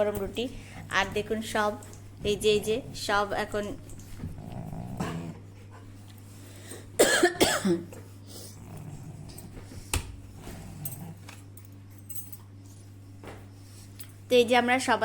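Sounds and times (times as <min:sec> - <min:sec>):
steady low hum: 0:00.0 - 0:15.0
cough-like voice burst: 0:07.0 - 0:08.0.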